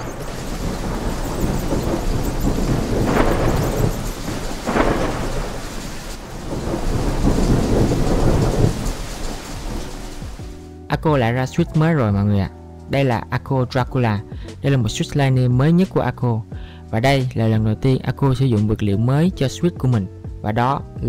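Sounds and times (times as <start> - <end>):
thunder rolling: 0.0 - 10.6
steady rain: 0.0 - 10.7.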